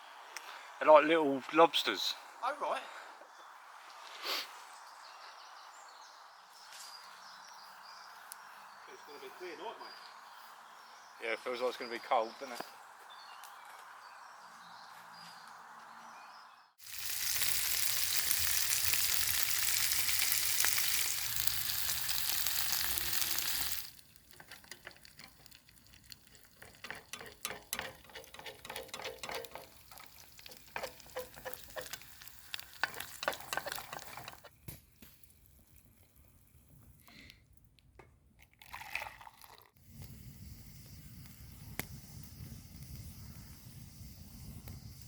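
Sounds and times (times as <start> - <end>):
food sizzling in a pan: 16.8 - 34.4
oil spitting and crackling: 16.8 - 45.0.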